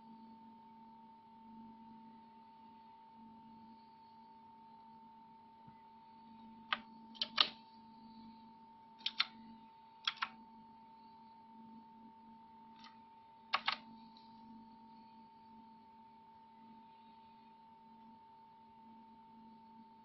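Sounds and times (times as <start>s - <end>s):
mechanical keyboard key clicks: 6.7s - 7.5s, 9.0s - 9.3s, 10.1s - 10.3s, 13.6s - 13.8s.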